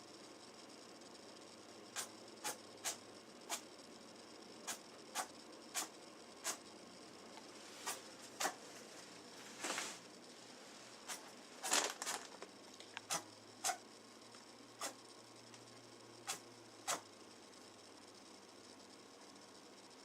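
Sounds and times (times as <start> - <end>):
rabbit sneezing: 2.0 - 3.7, 4.6 - 6.6, 7.8 - 8.6, 11.0 - 12.2, 13.1 - 13.8, 14.8 - 15.0, 16.2 - 17.1.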